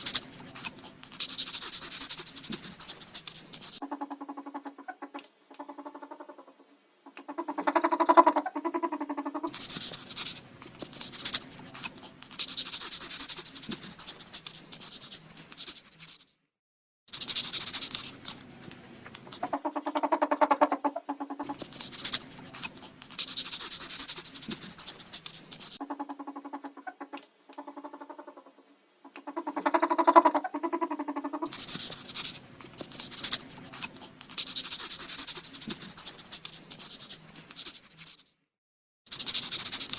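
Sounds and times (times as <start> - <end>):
scratchy hissing noise: 0.0 - 3.8, 7.2 - 16.4, 17.1 - 19.6, 21.4 - 25.8, 31.4 - 38.4, 39.1 - 39.9
ferret buzzy call: 0.0 - 15.1, 19.2 - 37.8.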